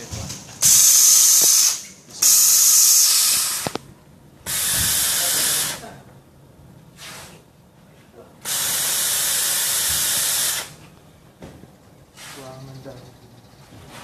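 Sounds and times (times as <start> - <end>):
pressurised gas hissing: 0.6 - 3.8, 4.4 - 5.9, 7.0 - 7.4, 8.4 - 10.9.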